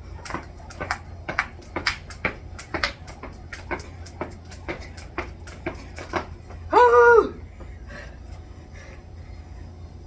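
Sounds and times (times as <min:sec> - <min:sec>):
jump rope slapping floor: 0:00.0 - 0:06.6
feet landing: 0:00.2 - 0:07.8.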